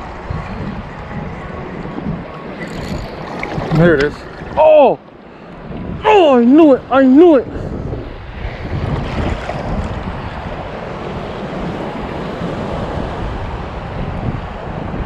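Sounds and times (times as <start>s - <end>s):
surf washing on beach: 0.0s - 15.0s
wind buffeting microphone: 0.0s - 15.0s.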